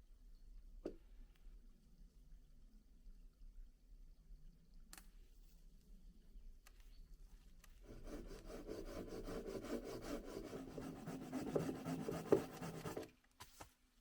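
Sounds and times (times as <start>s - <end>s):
scraping on wood: 7.9s - 13.1s.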